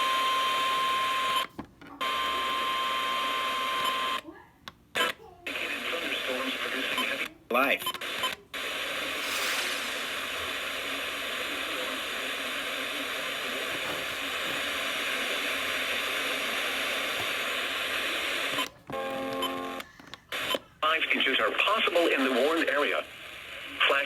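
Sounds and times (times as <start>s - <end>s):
radio static hiss: 5.6s - 7.3s, 8.2s - 18.7s, 20.3s - 24.0s.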